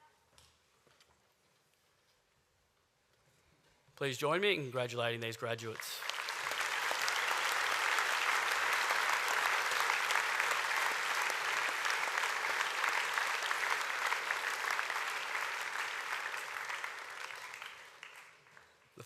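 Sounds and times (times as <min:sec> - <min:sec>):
audience applauding: 0:05.6 - 0:19.0.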